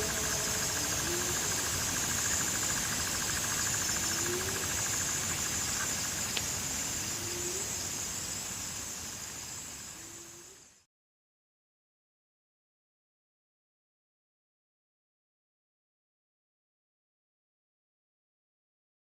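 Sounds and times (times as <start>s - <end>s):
insects chorus: 0.0s - 10.9s.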